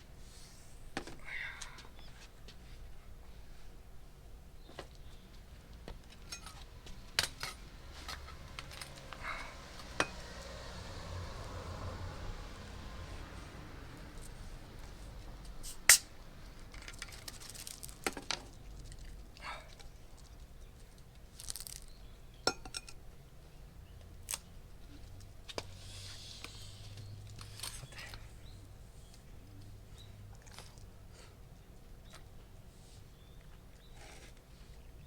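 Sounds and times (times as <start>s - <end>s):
tableware clinking: 22.5s - 23.0s.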